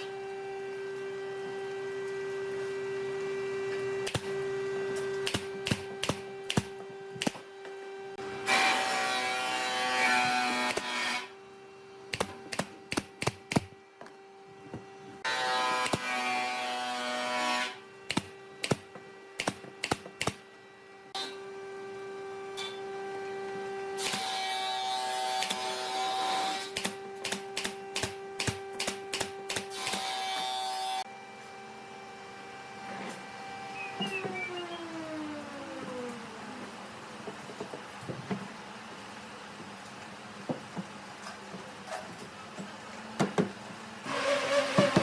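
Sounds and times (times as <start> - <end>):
power tool noise: 0.0 - 13.7, 15.2 - 36.8, 44.0 - 45.0
motor hum: 31.1 - 45.0.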